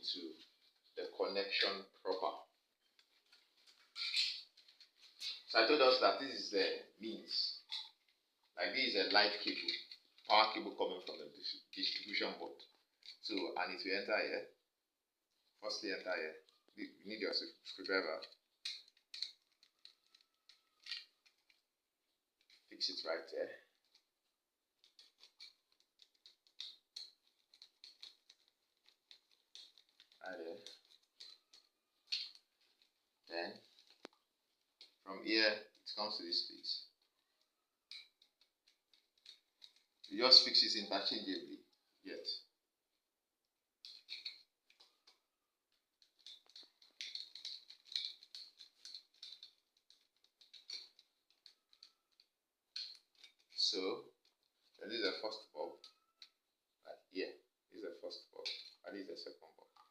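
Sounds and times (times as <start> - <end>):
screwdriver clicks and scrapes: 24.8 - 33.0, 43.8 - 45.2, 46.0 - 53.6.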